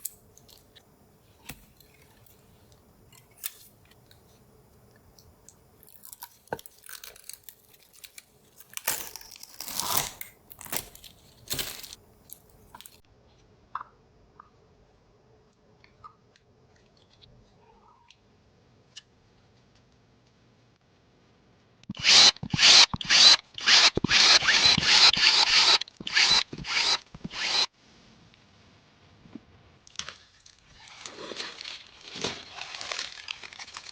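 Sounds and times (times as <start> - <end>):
packaging tearing and crinkling: 0.0 - 13.0, 30.4 - 33.9
rustling: 0.0 - 13.0, 30.0 - 33.9.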